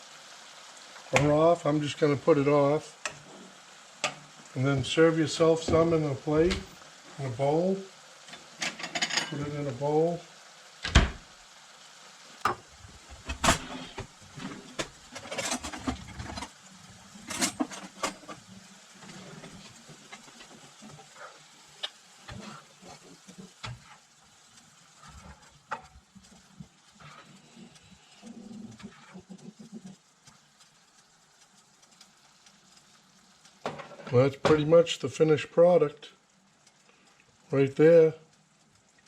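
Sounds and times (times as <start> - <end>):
utensil scraping and clinking on pan: 8.3 - 9.5, 13.2 - 21.1.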